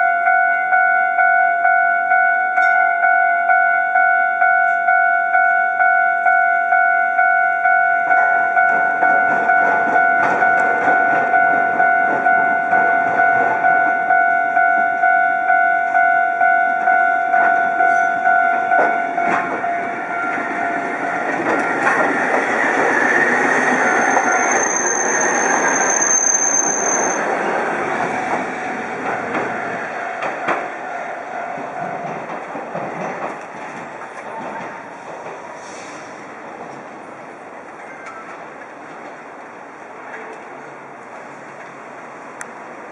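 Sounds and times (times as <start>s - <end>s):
level crossing warning bell: 0.0s - 32.4s
tram wheels rumbling on rail: 8.0s - 42.9s
wheel squeal: 22.5s - 27.3s.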